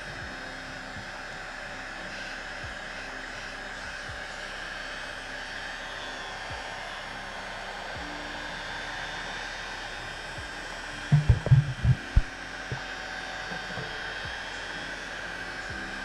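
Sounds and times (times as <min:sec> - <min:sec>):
heat gun blowing air: 0:00.0 - 0:16.0
short low thumps: 0:11.1 - 0:12.8.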